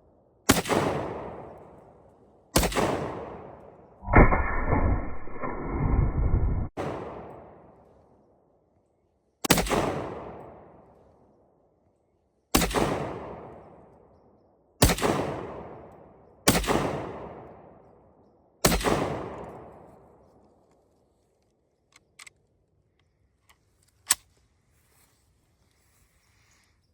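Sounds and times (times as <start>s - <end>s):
rifle shots echoing: 12.6s - 13.8s, 14.8s - 15.9s.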